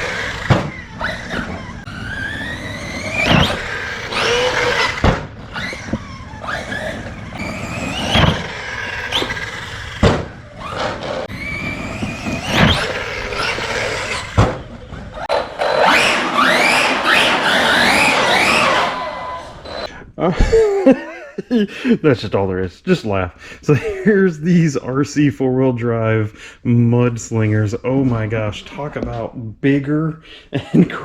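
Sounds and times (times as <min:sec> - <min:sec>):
sharp knocks from landings: 0:00.0 - 0:15.9
tyres on gravel: 0:00.0 - 0:19.4
electric motor whining: 0:00.0 - 0:19.9.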